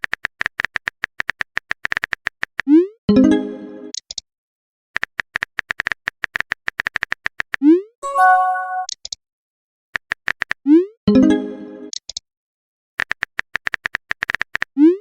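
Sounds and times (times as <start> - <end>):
brief chime: 8.0 - 8.9.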